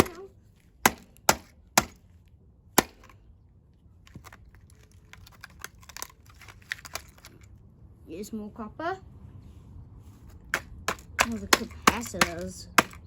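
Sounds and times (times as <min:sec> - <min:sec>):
loose parts rattling: 0:04.0 - 0:07.6.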